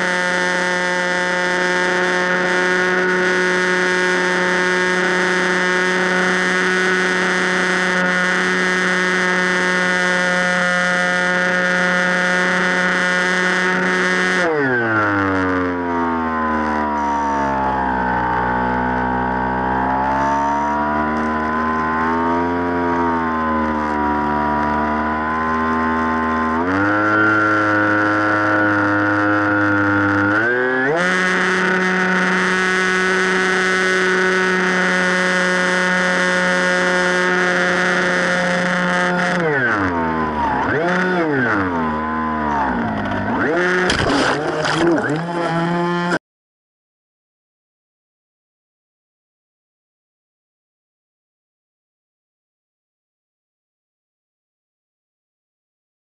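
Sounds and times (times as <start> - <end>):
model plane motor whining: 26.5 - 46.2.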